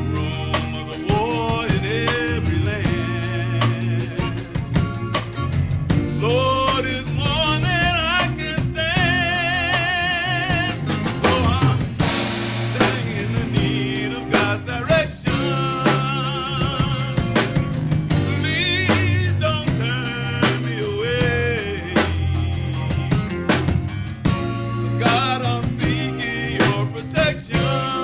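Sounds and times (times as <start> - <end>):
person singing with vibrato: 0.0 - 5.0, 6.1 - 23.2, 24.9 - 28.0
bass line: 0.0 - 28.0
drum kit beat: 0.0 - 28.0.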